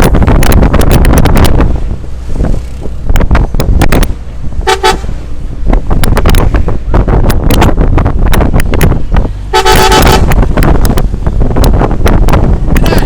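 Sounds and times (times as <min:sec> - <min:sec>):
wind buffeting microphone: 0:00.0 - 0:13.0
vehicle horn toots: 0:04.6 - 0:05.2, 0:09.5 - 0:10.4.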